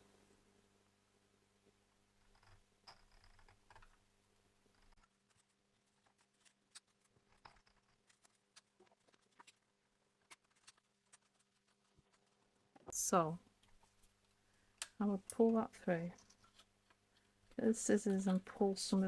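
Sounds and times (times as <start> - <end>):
light clicks and taps: 13.6 - 19.0.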